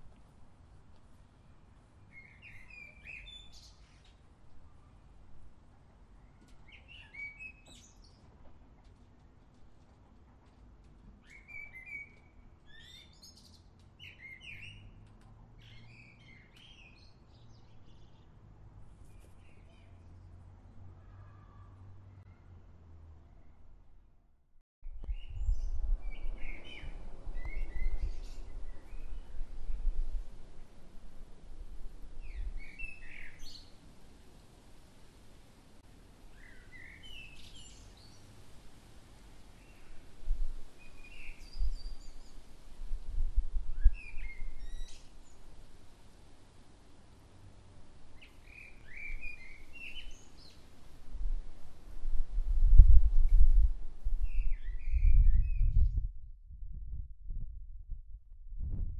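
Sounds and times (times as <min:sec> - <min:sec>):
songbird chirping: 0:00.1 - 0:05.2, 0:05.9 - 0:09.2, 0:10.4 - 0:18.4, 0:19.0 - 0:22.6, 0:32.2 - 0:33.8, 0:36.3 - 0:38.3, 0:48.1 - 0:50.7
songbird chirping and warbling: 0:01.4 - 0:05.0, 0:06.2 - 0:08.2, 0:43.7 - 0:45.4, 0:48.2 - 0:50.6
low rumble: 0:55.0 - 0:58.9.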